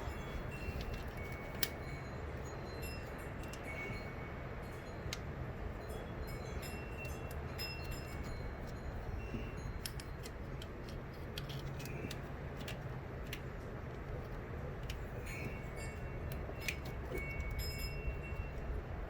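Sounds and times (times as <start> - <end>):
faint ringing tones: 0.0 - 10.9, 14.9 - 19.0
light clicks and clinks: 0.0 - 18.9
steady low hum: 0.0 - 19.0.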